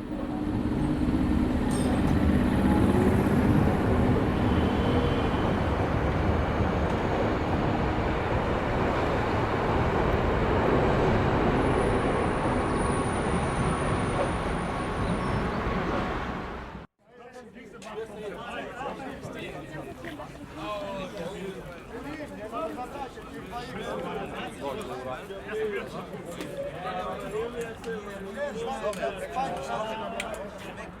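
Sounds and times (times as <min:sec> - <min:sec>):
train rumbling: 0:00.2 - 0:16.9.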